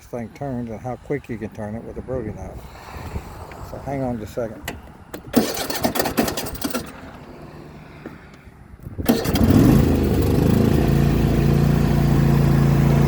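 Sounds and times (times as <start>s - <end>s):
engine clicks: 4.6s - 7.4s, 8.3s - 10.5s
lawn tractor engine starting: 4.7s - 8.0s, 9.0s - 13.0s.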